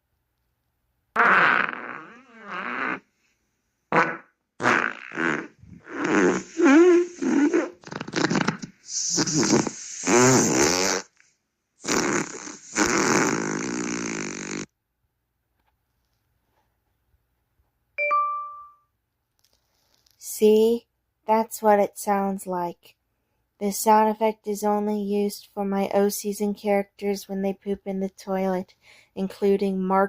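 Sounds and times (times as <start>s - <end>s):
fart noises: 1.1s - 3.1s, 3.9s - 11.2s, 11.8s - 14.7s.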